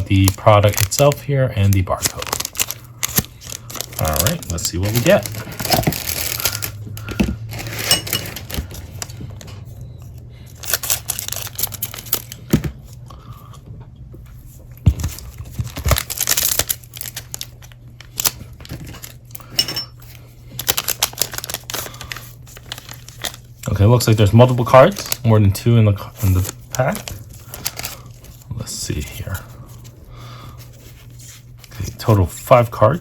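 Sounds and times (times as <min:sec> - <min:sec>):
plastic wrapper tearing and crinkling: 0:00.0 - 0:09.4, 0:10.4 - 0:12.5, 0:14.8 - 0:19.5, 0:20.1 - 0:25.4, 0:26.0 - 0:29.4
low steady hum: 0:00.0 - 0:33.0.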